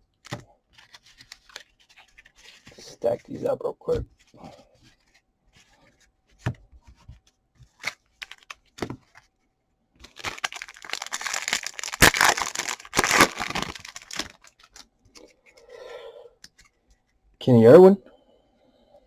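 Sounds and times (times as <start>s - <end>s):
foil wrapper tearing: 10.0s - 14.8s
sharp cracks: 10.2s - 14.3s.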